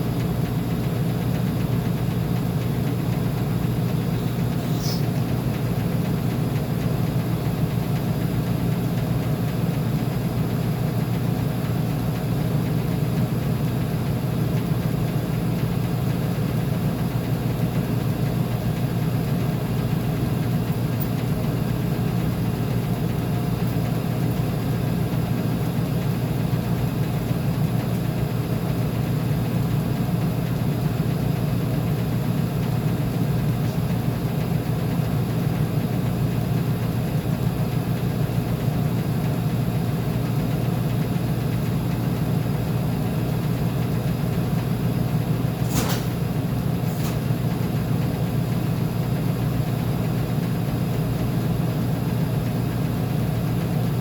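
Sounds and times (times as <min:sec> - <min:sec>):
washing machine hum: 0:00.0 - 0:54.0.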